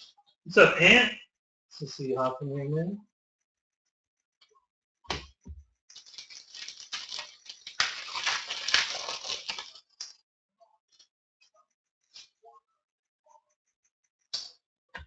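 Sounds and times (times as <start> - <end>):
foil pack crinkling and tearing: 5.9 - 10.2
cards rustling: 6.0 - 10.2.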